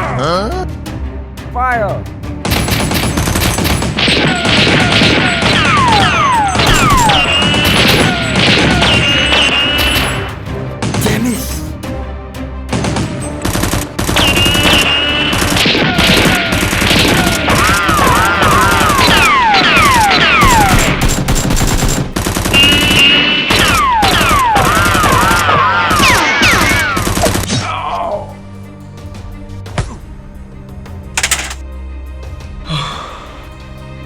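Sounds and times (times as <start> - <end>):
rapid gunfire sound effects: 2.4 - 10.1, 12.7 - 27.5, 31.2 - 31.6.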